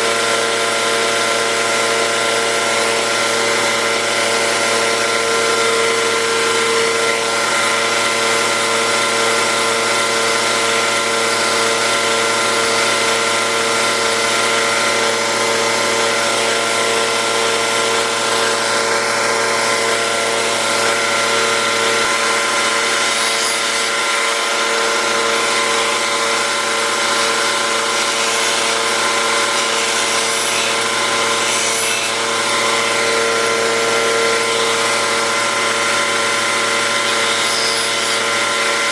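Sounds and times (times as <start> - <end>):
electric grinder motor whine: 0.0 - 38.9
blade grinding hiss: 29.5 - 34.7.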